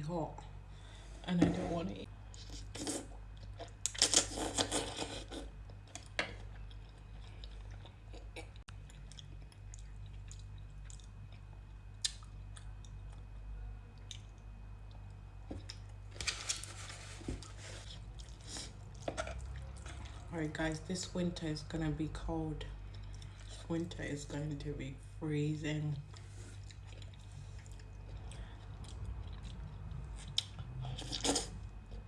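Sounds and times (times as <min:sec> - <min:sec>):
person chewing noodles: 0:02.3 - 0:13.3, 0:17.7 - 0:20.3, 0:26.1 - 0:32.0.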